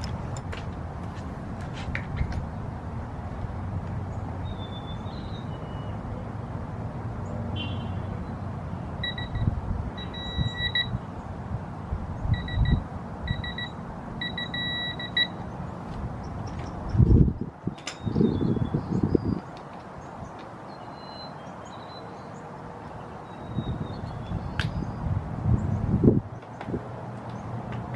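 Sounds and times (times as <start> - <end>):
torque wrench beeping: 9.0 - 10.9.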